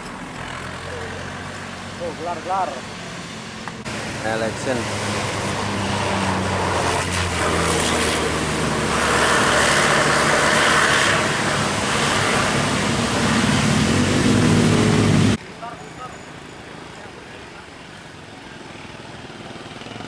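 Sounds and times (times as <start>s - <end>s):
heavy vehicle engine droning: 0.0s - 15.4s.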